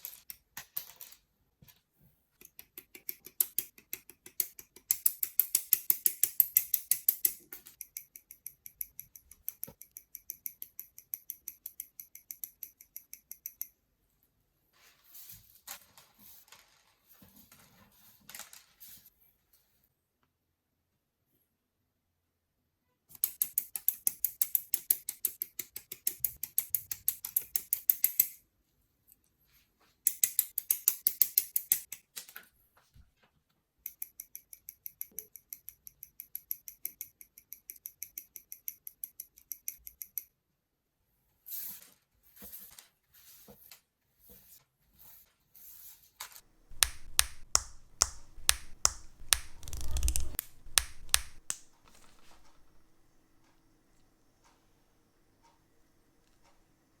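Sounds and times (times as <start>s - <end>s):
plastic clicks and snaps: 46.7s - 52.8s.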